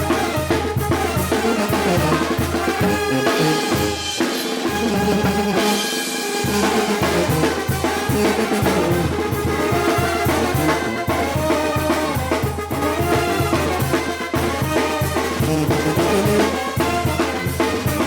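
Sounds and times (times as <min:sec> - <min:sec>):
drums: 0:00.0 - 0:18.0
trumpets and trombones: 0:00.0 - 0:18.0
bouncing low bass line: 0:02.8 - 0:04.0.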